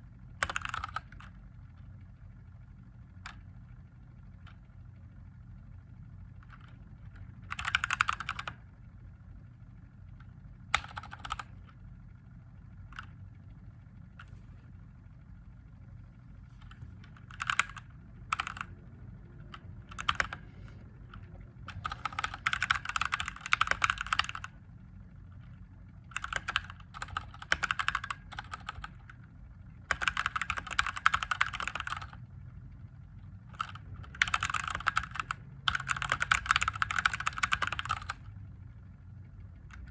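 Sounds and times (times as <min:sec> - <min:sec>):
low steady hum: 0:00.0 - 0:39.9
mechanical keyboard typing: 0:00.4 - 0:01.4, 0:03.2 - 0:03.5, 0:06.4 - 0:08.6, 0:10.7 - 0:11.8, 0:16.6 - 0:20.4, 0:21.0 - 0:24.6, 0:26.1 - 0:29.2, 0:29.9 - 0:32.2, 0:33.5 - 0:38.3.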